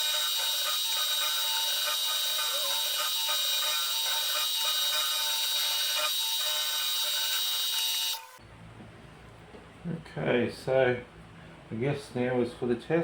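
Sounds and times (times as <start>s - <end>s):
milling machine high whine: 0.0s - 8.4s.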